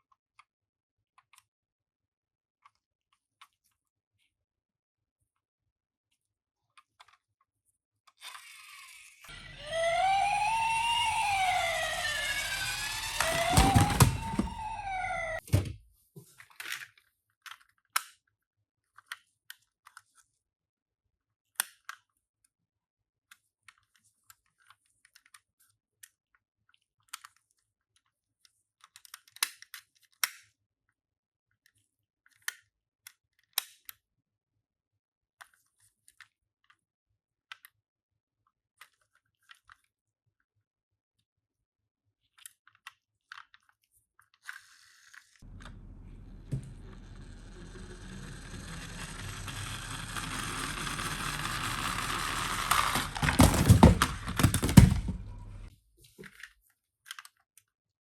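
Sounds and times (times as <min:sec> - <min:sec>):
toy cars clicking and tapping: 0:09.3 - 0:15.4, 0:45.6 - 0:55.7.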